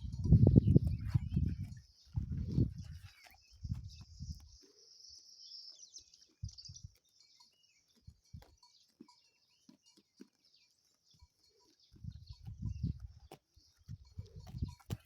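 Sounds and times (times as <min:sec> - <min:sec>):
short low thuds: 0:00.0 - 0:03.0
birds chirping faintly: 0:00.0 - 0:15.0.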